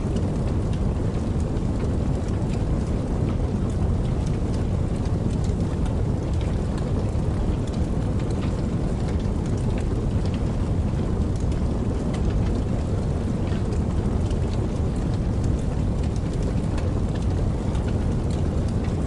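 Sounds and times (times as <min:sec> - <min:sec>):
campfire crackling and popping: 0:00.0 - 0:19.0.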